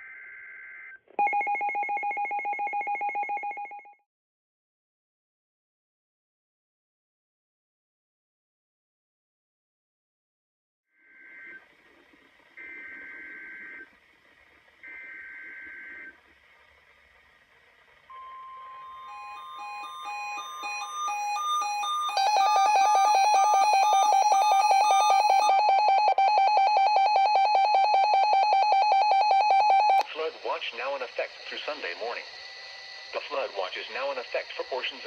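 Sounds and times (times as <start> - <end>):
beeping alert tones: 18.1 - 30.0
data tone bursts: 18.1 - 35.0
rapidly pulsing alert tone: 18.1 - 35.0
steady electronic tone: 18.1 - 35.0.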